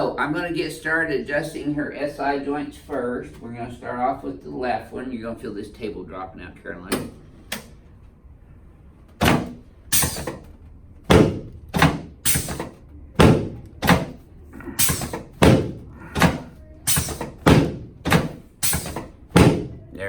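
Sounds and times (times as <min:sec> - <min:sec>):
chiropractic table section dropping: 0:09.1 - 0:19.9.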